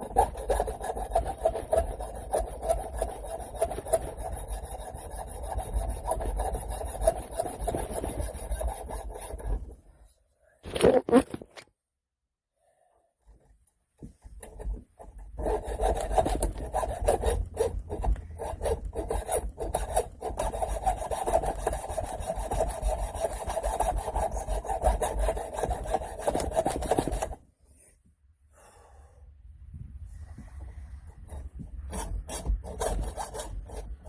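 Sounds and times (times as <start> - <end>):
rasping scrape cutting metal: 0.0 - 9.6, 15.4 - 27.4, 31.8 - 34.0.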